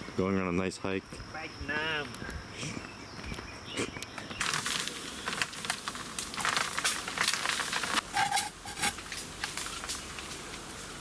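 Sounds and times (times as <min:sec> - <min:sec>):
footsteps crunching through dry leaves: 0:04.4 - 0:11.0.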